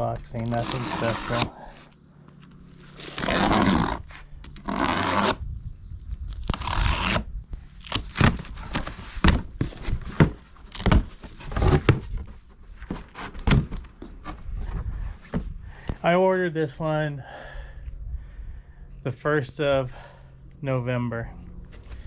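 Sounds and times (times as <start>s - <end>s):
packing tape ripping off box: 0.4s - 1.6s, 2.8s - 5.4s, 6.3s - 12.0s
cardboard knocks and scrapes: 7.9s - 15.5s.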